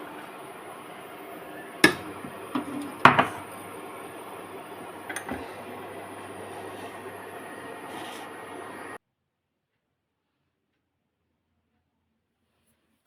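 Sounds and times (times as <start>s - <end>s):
containers and utensils knocking: 1.8s - 3.8s.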